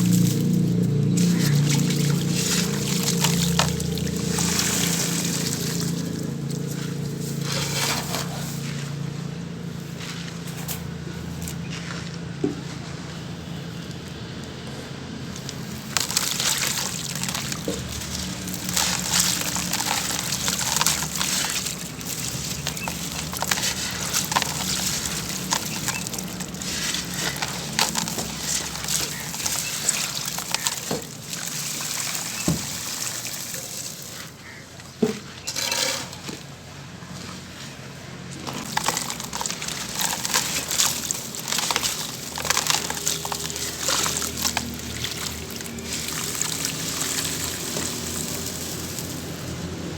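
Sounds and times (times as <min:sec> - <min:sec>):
crushed charcoal pouring: 0:00.0 - 0:11.7, 0:15.2 - 0:49.9.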